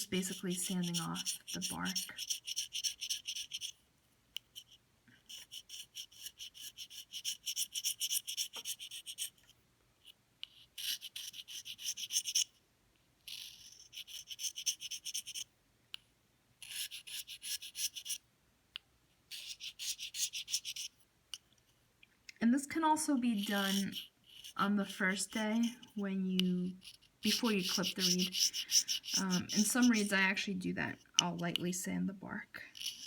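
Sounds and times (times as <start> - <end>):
knife scraping reed cane: 0.0 - 3.8, 23.3 - 26.0, 26.7 - 30.2, 32.7 - 33.0.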